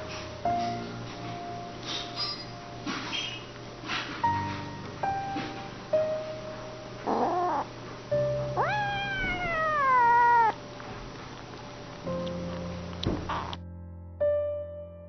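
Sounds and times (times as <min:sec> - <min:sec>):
cat meowing: 0:07.0 - 0:07.7, 0:08.4 - 0:10.6.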